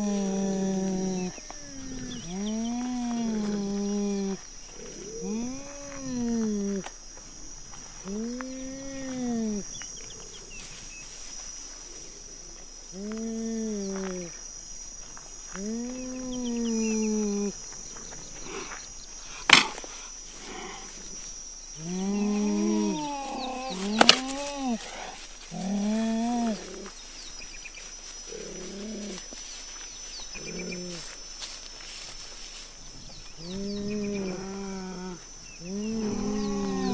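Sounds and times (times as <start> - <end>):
high insect drone: 0.0 - 36.9
cheetah calling: 18.4 - 31.2.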